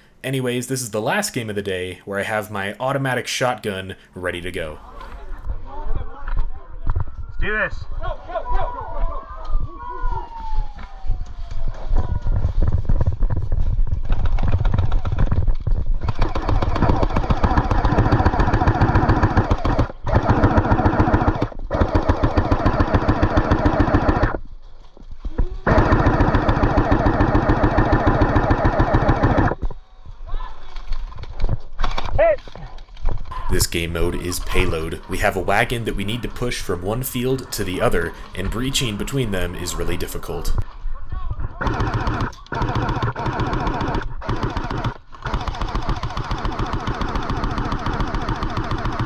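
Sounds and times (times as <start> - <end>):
airsoft gun firing bursts: 16.2 - 24.4, 25.7 - 29.6, 41.6 - 49.0.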